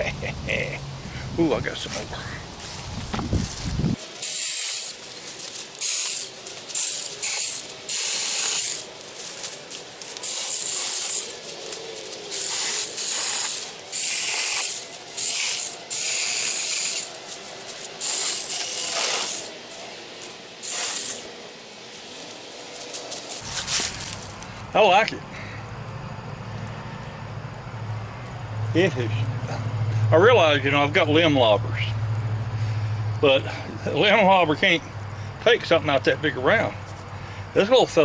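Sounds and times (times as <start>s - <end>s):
chainsaw rasping through wood: 4.0s - 23.4s
small electric motor whine: 4.0s - 23.4s.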